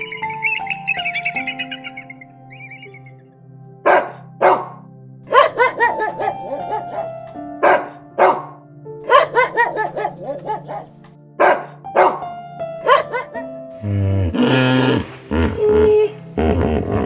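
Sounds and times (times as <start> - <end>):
background music: 0.0 - 17.0
dog barking: 3.9 - 12.2, 12.8 - 13.5.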